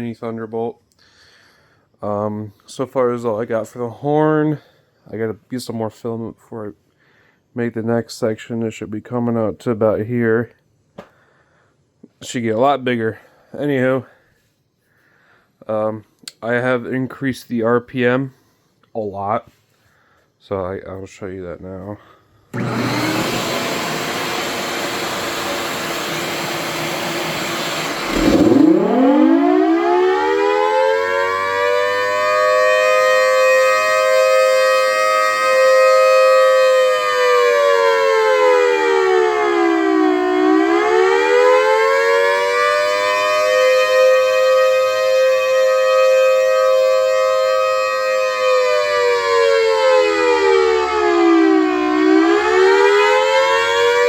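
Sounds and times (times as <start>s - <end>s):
siren wail: 27.6s - 54.0s
siren rushing hiss: 27.9s - 34.5s.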